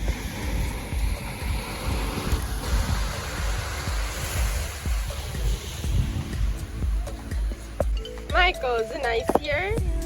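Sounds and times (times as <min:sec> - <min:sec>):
faint background music: 0:00.0 - 0:10.0
wind buffeting microphone: 0:00.0 - 0:10.0.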